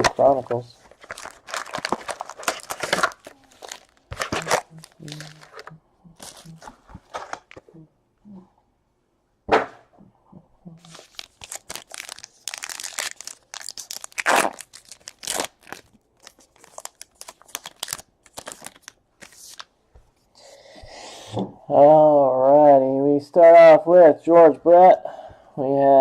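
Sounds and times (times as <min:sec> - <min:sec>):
wrapper crinkling: 0:00.0 - 0:07.7, 0:10.8 - 0:19.7
wrapper tearing: 0:00.8 - 0:07.6, 0:10.8 - 0:19.7.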